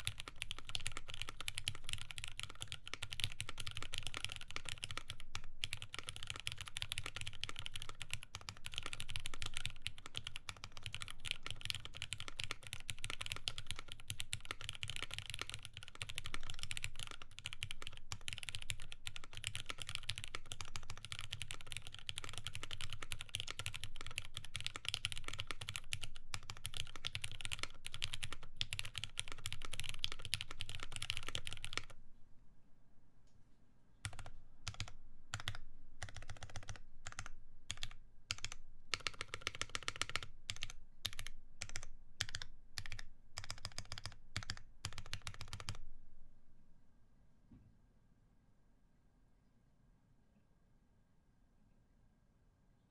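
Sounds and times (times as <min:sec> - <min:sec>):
mechanical keyboard typing: 0:00.0 - 0:32.0, 0:34.0 - 0:45.8.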